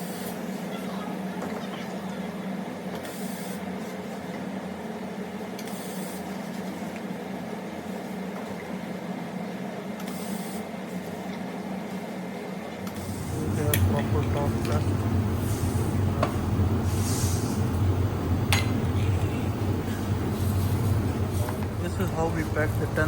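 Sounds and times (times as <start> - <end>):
welding hiss bursts: 12.9 - 23.0
welding machine humming: 12.9 - 23.0.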